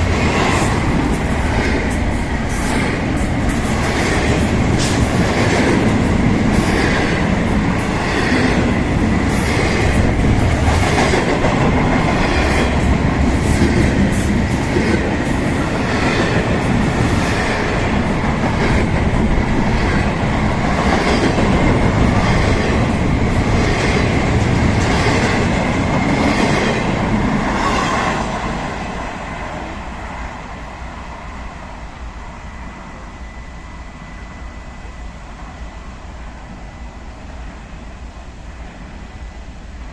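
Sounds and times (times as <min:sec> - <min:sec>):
train wheels clicking over rail joints: 0:00.0 - 0:27.7
train rumble: 0:00.0 - 0:39.9.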